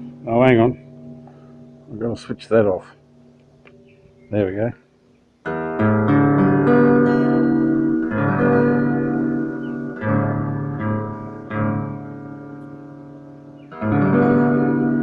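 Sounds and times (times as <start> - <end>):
electric guitar chords ringing: 0.0 - 4.4, 5.4 - 15.0.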